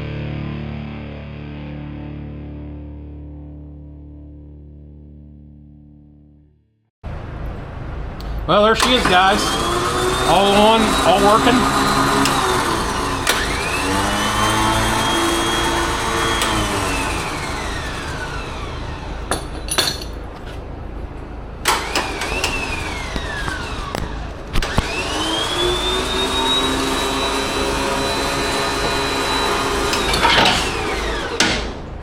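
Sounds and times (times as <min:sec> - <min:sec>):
electric winch motor whine: 0:08.7 - 0:19.5, 0:21.6 - 0:32.0.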